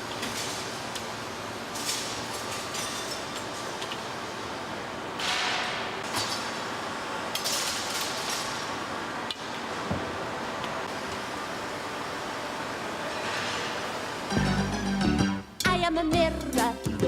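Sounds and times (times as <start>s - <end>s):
machine hum: 14.0s - 16.5s.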